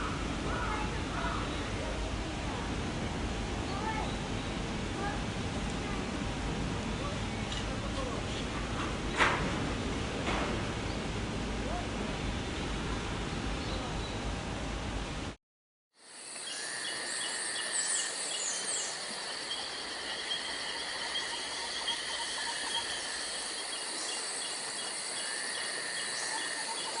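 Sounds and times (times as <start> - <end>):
insects buzzing: 16.0 - 27.0
pulsed insect chirping: 16.0 - 27.0
sweeping bird calls: 16.4 - 27.0.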